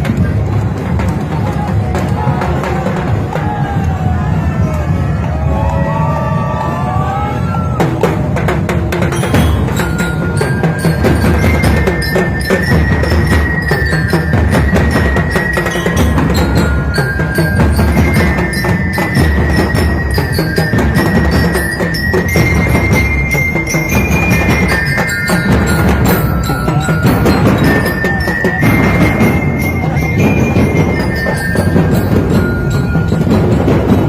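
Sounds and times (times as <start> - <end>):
street band drumming: 0.0 - 34.0.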